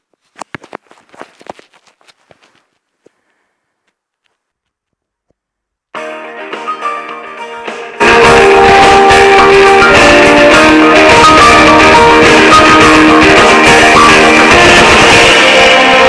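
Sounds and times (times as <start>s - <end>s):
guitar phone ringtone: 6.0s - 16.0s.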